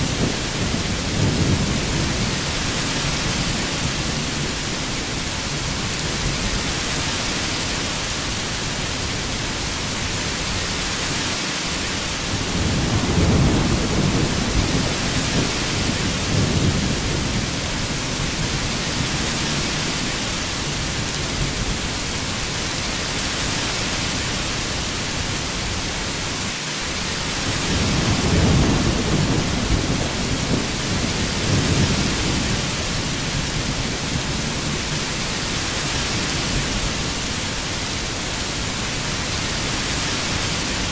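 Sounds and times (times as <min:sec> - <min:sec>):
thunder rumbling: 0:00.0 - 0:06.8, 0:12.2 - 0:22.1, 0:27.1 - 0:39.3
heavy rain: 0:00.0 - 0:40.9.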